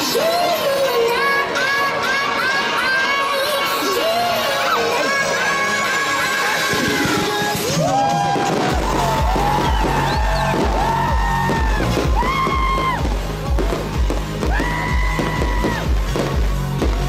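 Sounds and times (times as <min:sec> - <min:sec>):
steady bass beat: 0:08.4 - 0:17.0.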